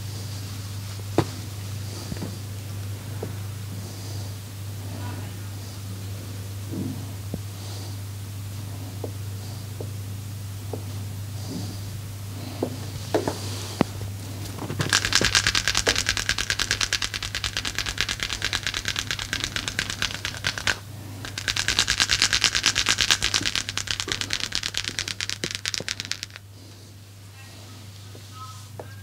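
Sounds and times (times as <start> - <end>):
rapid percussive massage strikes: 14.5 - 26.4.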